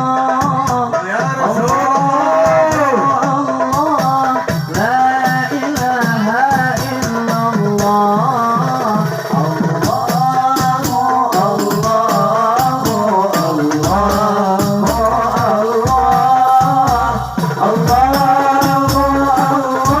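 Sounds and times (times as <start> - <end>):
frame drum strokes with jingles: 0.0 - 20.0
person singing melody: 0.0 - 20.0
deep drum thumps: 8.8 - 20.0.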